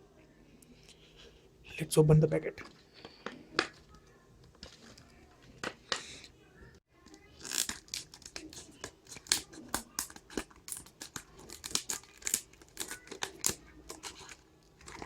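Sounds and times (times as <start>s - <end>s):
packet tearing and crumpling: 7.2s - 15.0s.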